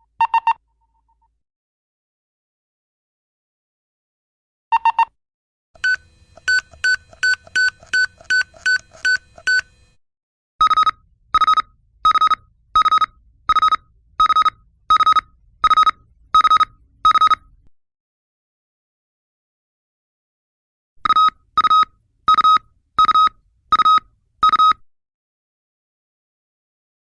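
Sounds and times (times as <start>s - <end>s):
electronic device beeps: 0.0s - 1.2s, 4.7s - 5.2s, 5.8s - 10.0s, 10.6s - 17.5s.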